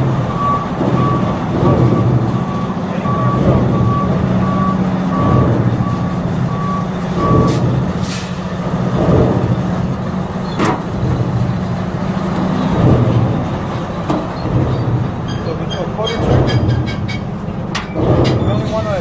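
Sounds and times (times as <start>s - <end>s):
reversing alarm beeping: 0.0s - 7.8s, 15.2s - 17.2s
heavy vehicle engine running: 0.0s - 19.0s.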